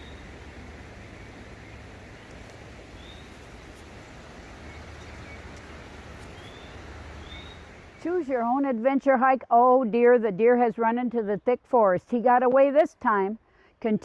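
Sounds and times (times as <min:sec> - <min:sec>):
low outdoor rumble: 0:00.0 - 0:09.5
faint bird chirps: 0:06.3 - 0:08.1.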